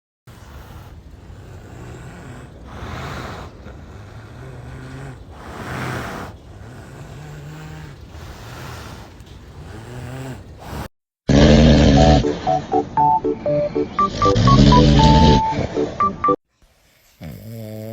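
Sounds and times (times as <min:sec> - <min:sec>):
animal snoring: 0:00.3 - 0:12.2, 0:17.1 - 0:17.9.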